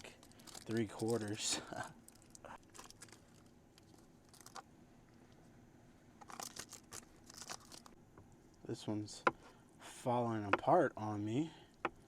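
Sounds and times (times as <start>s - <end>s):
faint clicks and crinkles of tofu: 0.0s - 8.6s.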